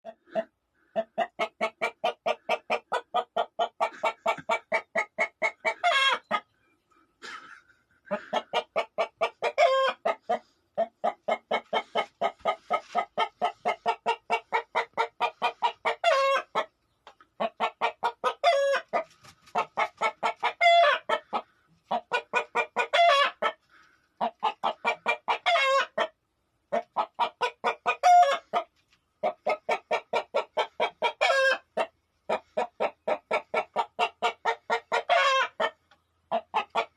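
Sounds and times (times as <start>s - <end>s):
chicken clucking: 0.0s - 36.9s.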